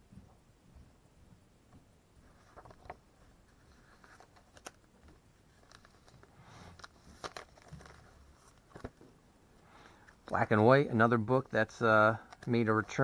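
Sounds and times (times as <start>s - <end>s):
comic books rustling and tapping: 2.3s - 9.2s.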